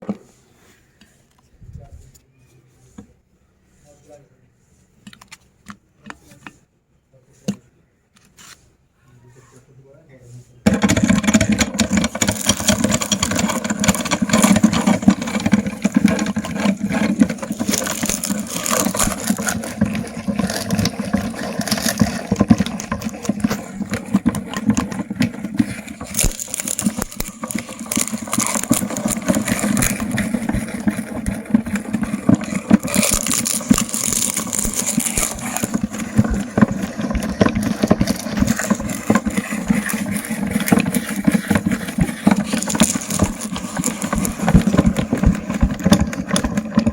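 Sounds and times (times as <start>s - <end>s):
auger crackling and rattling: 10.7s - 46.9s
meat grinder motor hum: 10.7s - 46.9s.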